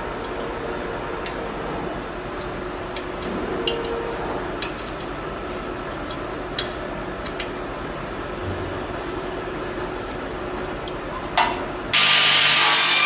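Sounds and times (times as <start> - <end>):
sawing machine humming: 11.9 - 13.0.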